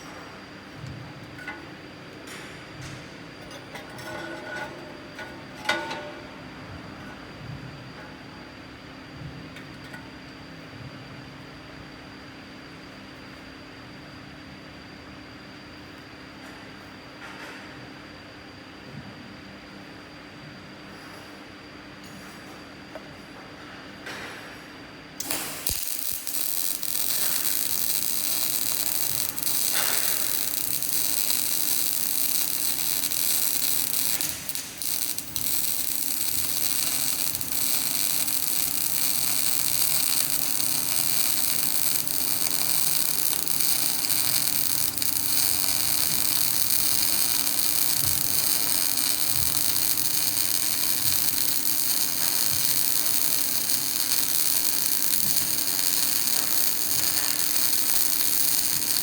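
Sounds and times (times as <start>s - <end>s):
welding arc hissing: 25.2s - 59.0s.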